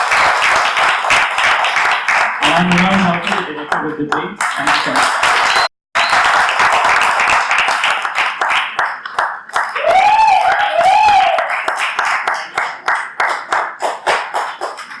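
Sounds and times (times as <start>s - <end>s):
audience applauding: 0.0s - 15.0s
person cheering with whoops: 9.8s - 11.5s.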